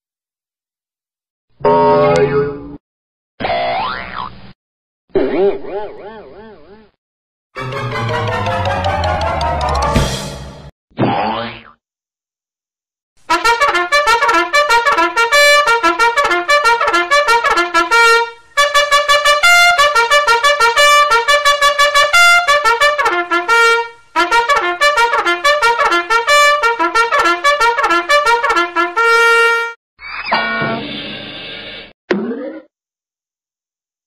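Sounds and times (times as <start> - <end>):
trumpet playing fast melody: 7.6 - 10.4, 13.3 - 29.8.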